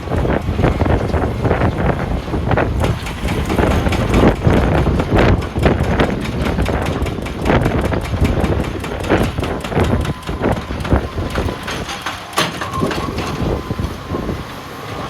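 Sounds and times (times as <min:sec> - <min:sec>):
diesel engine running loudly: 0:00.0 - 0:15.0
knocks and clatter: 0:02.5 - 0:14.0.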